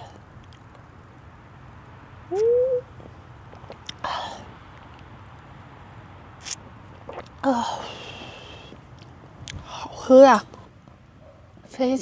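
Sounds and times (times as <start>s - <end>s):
low background noise: 0.0s - 12.0s.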